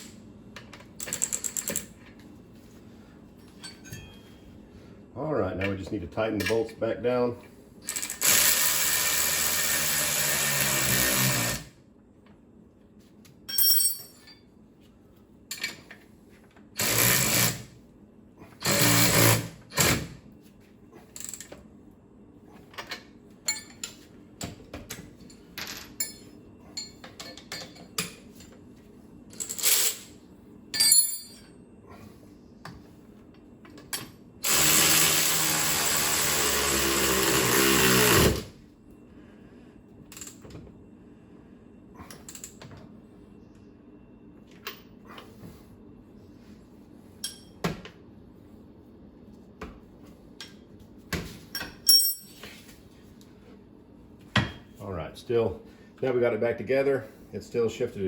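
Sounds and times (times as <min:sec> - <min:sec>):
cordless power tool running: 0:08.0 - 0:11.7, 0:34.4 - 0:38.5
metal clinks: 0:13.5 - 0:14.4, 0:30.8 - 0:31.5, 0:51.6 - 0:52.4.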